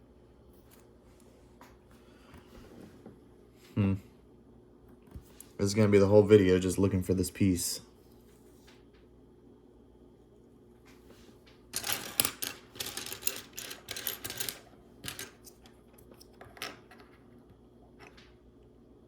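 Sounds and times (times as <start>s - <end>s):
plastic pieces clattering: 11.7s - 15.4s.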